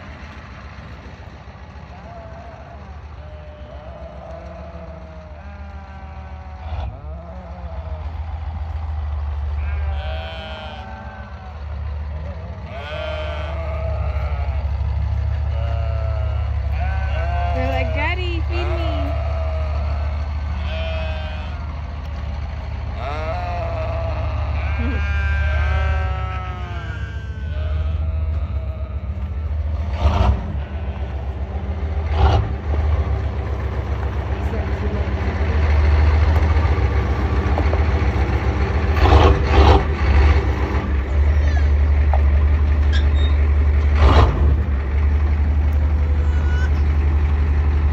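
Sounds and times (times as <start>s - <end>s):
diesel engine droning: 0.0s - 47.9s
animal bleating: 1.9s - 8.2s, 9.6s - 21.9s, 22.9s - 31.5s, 41.2s - 41.9s, 42.9s - 43.6s, 46.0s - 47.0s.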